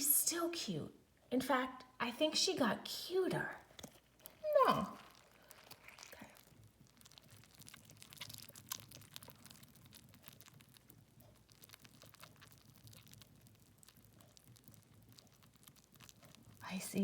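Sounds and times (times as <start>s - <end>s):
faint clicks and crackles: 3.5s - 17.0s.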